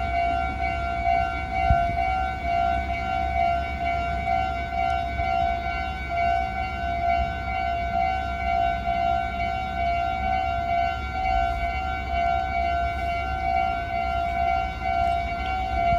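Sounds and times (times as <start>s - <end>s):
level crossing warning bell: 0.0s - 15.9s.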